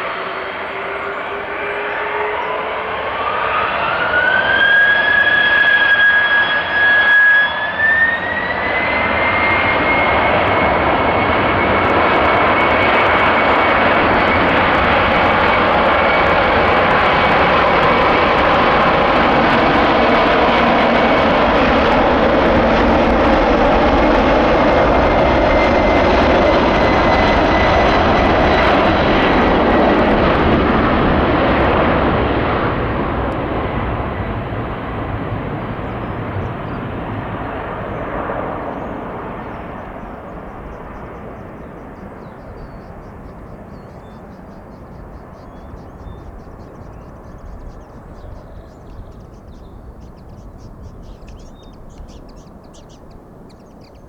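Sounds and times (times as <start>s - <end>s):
jet engine roar: 0.0s - 54.0s
faint bird calls: 38.7s - 54.0s.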